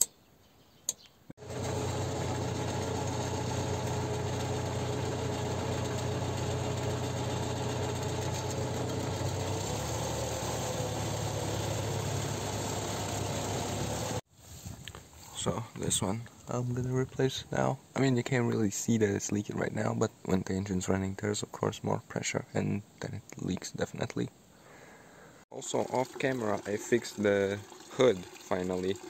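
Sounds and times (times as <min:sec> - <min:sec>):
tractor diesel engine idling: 0:01.4 - 0:14.2.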